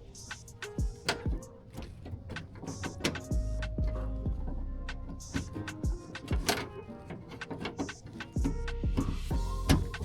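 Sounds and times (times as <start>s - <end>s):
electronic music with beat: 0.0s - 1.6s, 2.8s - 6.9s, 7.9s - 10.0s.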